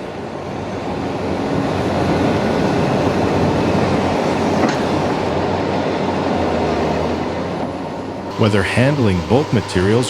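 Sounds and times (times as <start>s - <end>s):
railway wagons rumbling: 0.0s - 9.1s.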